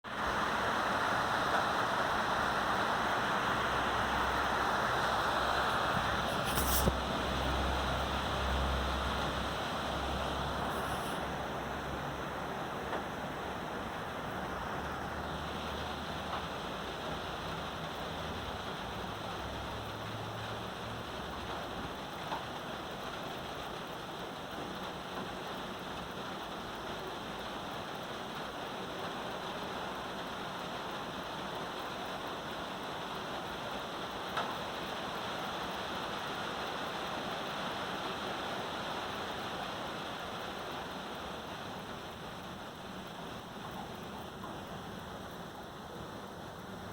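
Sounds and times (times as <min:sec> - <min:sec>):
heavy rain on metal roof: 0:00.0 - 0:46.9.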